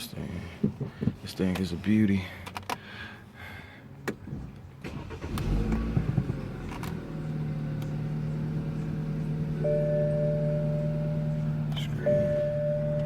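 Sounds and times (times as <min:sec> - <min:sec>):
car engine starting and idling: 0:04.0 - 0:13.0.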